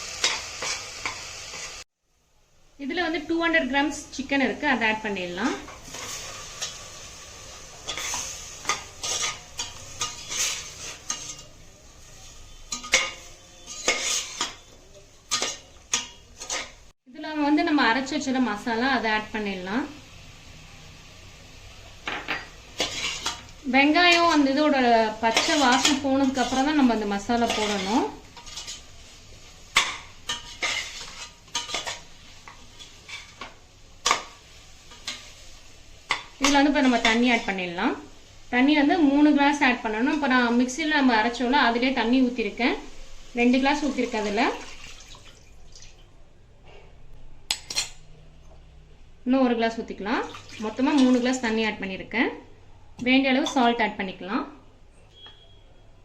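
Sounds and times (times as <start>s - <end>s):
chicken sizzling in hot oil: 0.0s - 1.9s, 4.6s - 17.0s, 17.8s - 45.9s
metal spoon scraping a pot: 7.8s - 11.6s, 12.2s - 14.7s, 15.3s - 16.8s, 22.8s - 23.5s, 25.3s - 29.0s, 29.8s - 34.2s.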